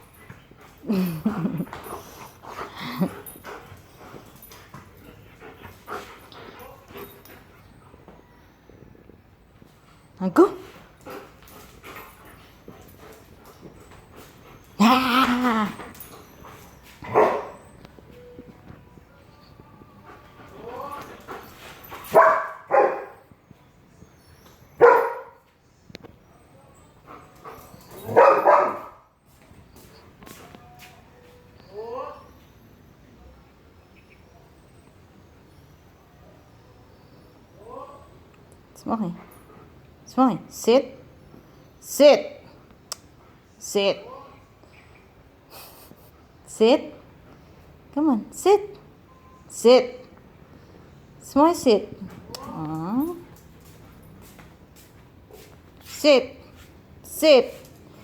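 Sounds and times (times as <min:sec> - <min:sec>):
dog barking: 0:17.1 - 0:17.6, 0:22.1 - 0:23.2, 0:24.8 - 0:25.4, 0:28.0 - 0:29.0.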